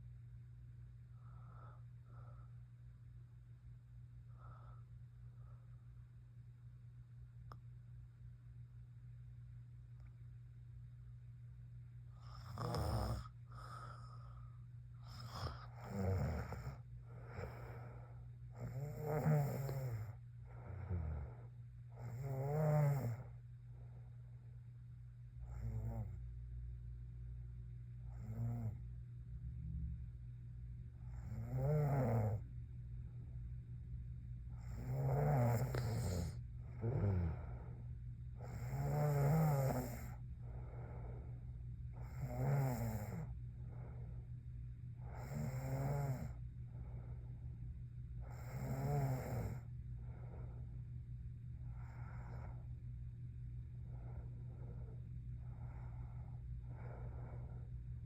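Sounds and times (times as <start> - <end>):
soft breathing: 0.8 - 6.4, 12.0 - 19.0, 19.7 - 22.1, 32.4 - 42.3, 43.1 - 48.8, 49.4 - 58.0
woman snoring: 12.2 - 14.2, 15.0 - 17.8, 18.6 - 23.3, 25.4 - 26.2, 28.2 - 28.8, 31.1 - 32.4, 34.6 - 37.8, 38.4 - 40.2, 42.0 - 43.3, 45.0 - 46.4, 48.2 - 49.7.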